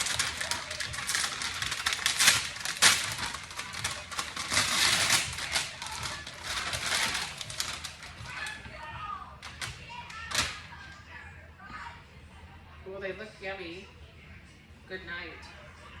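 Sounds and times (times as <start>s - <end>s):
plastic bags crinkling: 0.0s - 10.7s.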